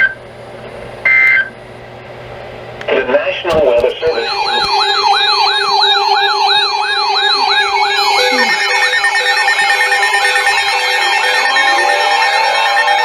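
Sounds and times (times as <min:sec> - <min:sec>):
electronic siren yelp: 0:03.7 - 0:13.0.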